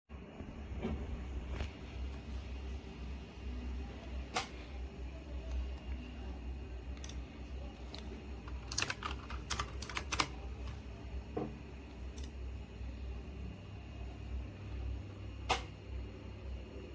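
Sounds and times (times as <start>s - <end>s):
steady low hum: 0.1s - 16.9s
clicky keyboard keystrokes: 7.8s - 10.8s.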